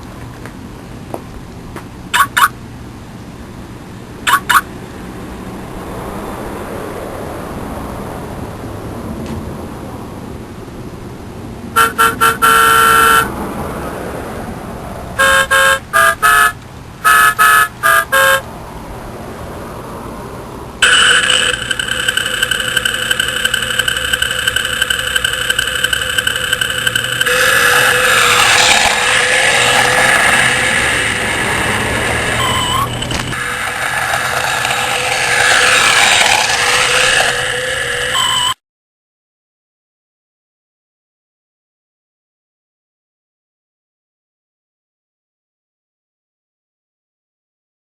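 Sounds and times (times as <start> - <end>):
car alarm pulsing and warbling: 2.2 - 2.6, 4.3 - 4.7, 11.8 - 13.3, 15.2 - 18.4, 20.8 - 38.6
car horn: 11.8 - 13.4, 15.2 - 18.5, 20.8 - 38.6.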